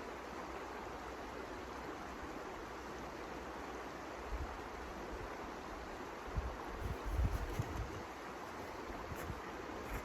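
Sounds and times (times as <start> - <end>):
wind blowing in snowstorm: 6.3 - 10.0.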